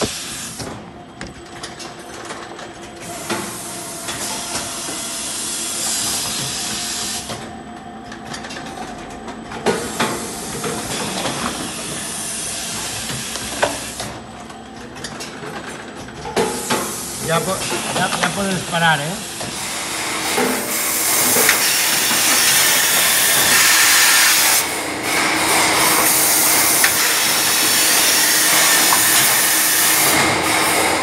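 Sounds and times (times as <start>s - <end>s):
packaging machine hissing: 0.0s - 0.9s, 3.0s - 7.3s, 9.7s - 14.2s, 16.4s - 31.0s.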